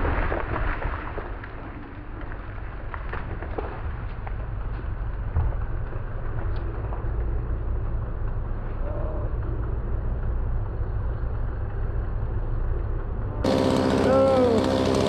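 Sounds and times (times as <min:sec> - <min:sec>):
diesel engine low rumble: 0:00.0 - 0:15.0
chainsaw revving: 0:13.4 - 0:15.0.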